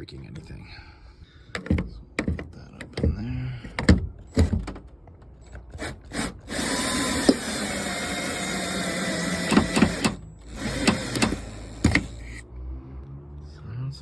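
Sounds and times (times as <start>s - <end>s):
plastic panel scraping and creaking: 8.7s - 12.4s.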